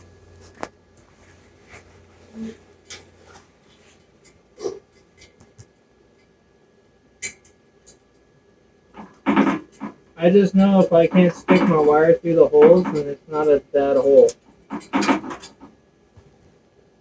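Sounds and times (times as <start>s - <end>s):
low steady hum: 0.0s - 17.0s
handling clicks and knocks: 9.0s - 15.7s.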